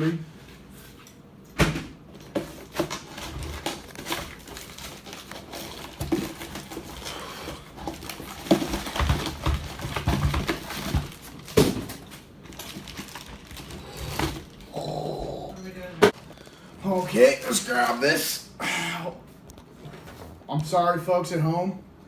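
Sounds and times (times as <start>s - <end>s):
plastic packaging crinkling and clicking: 2.2s - 14.8s.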